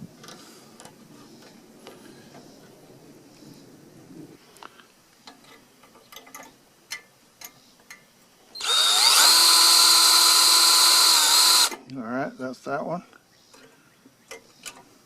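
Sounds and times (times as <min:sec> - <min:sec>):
power tool motor whine: 0:08.6 - 0:11.8.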